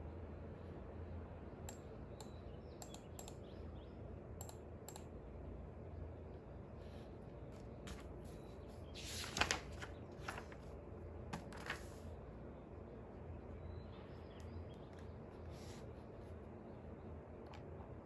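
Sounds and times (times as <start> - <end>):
steady low hum: 0.0 - 18.0
paper rustling: 7.6 - 10.8, 11.4 - 12.0.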